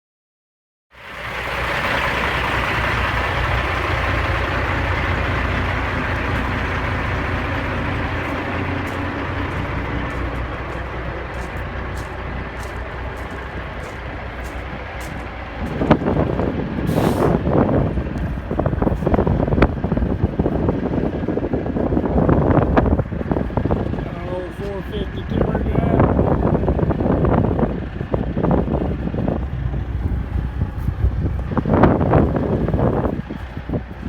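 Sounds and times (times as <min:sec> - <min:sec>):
diesel truck engine rumble: 0:01.0 - 0:34.0
broad hiss: 0:16.9 - 0:17.4.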